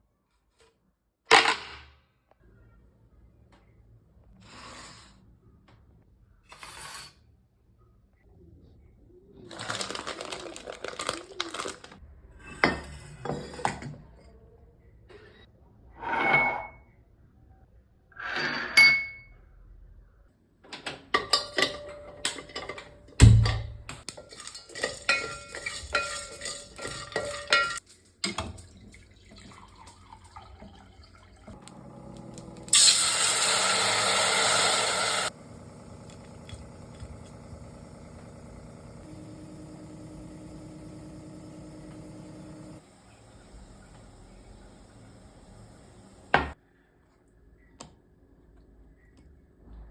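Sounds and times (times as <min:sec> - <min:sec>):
glassware and utensils clinking: 0:21.2 - 0:30.9
liquid pouring: 0:28.4 - 0:39.4.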